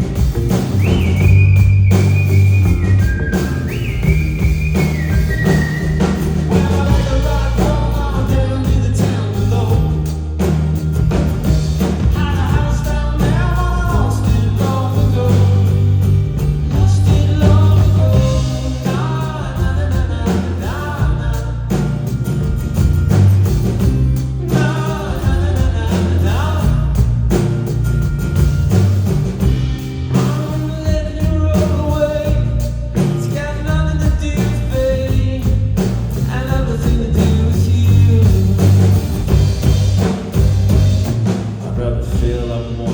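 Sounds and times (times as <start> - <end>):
sliding melodic lead line: 0.0 - 31.8
rock band playing live: 0.0 - 42.9.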